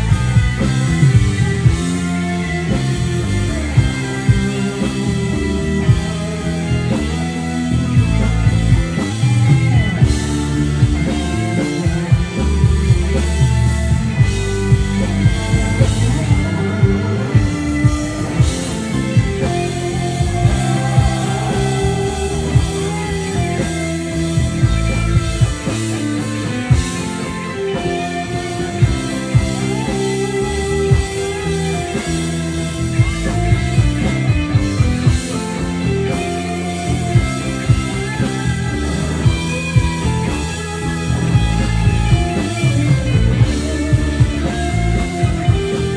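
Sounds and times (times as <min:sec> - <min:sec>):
electric guitars: 0:00.0 - 0:45.9
drum beat: 0:16.9 - 0:26.0.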